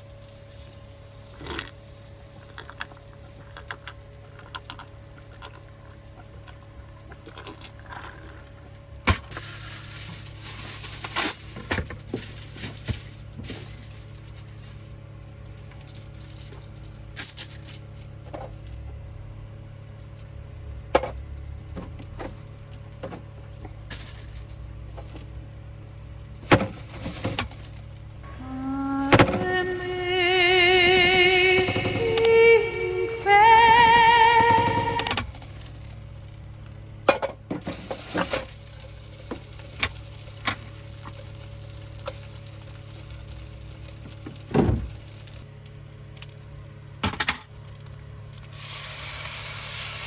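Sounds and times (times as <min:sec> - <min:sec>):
steady low hum: 0:00.0 - 0:50.0
objects clicking and clinking: 0:02.4 - 0:14.7
rustling and clattering: 0:02.4 - 0:14.8, 0:21.7 - 0:28.0, 0:35.4 - 0:45.4.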